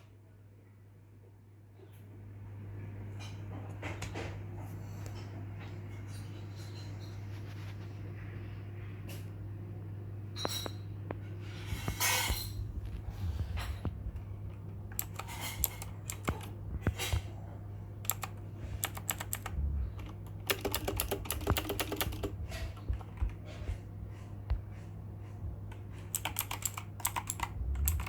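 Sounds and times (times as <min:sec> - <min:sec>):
low hum: 0:05.6 - 0:28.0
mechanical keyboard typing: 0:14.9 - 0:17.1, 0:18.0 - 0:23.4, 0:25.7 - 0:28.0.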